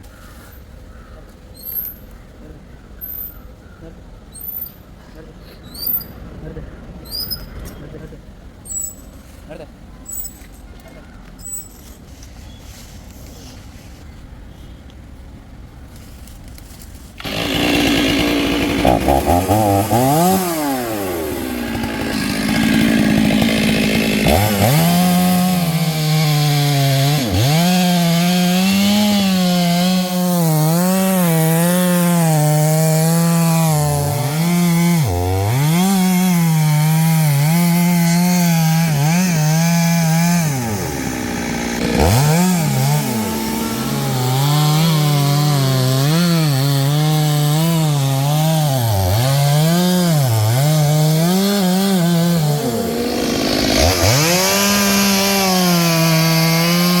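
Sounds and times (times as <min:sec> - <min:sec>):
chainsaw cutting wood: 0:17.2 - 0:57.0.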